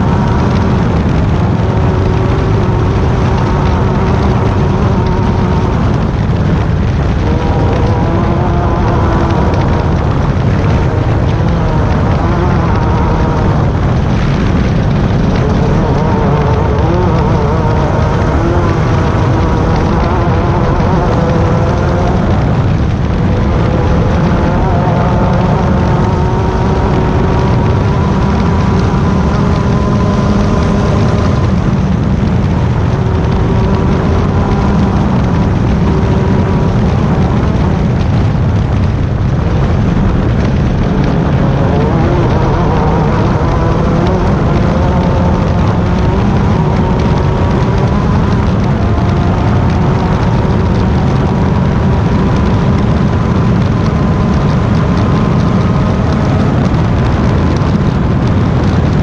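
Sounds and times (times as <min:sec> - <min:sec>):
race car engine: 0:00.0 - 0:59.0
road and wind rumble: 0:00.0 - 0:59.0.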